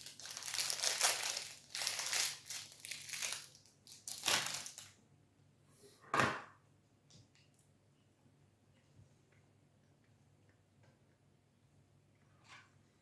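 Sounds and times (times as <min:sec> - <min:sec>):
plastic wrapper crinkling: 0:00.0 - 0:04.9.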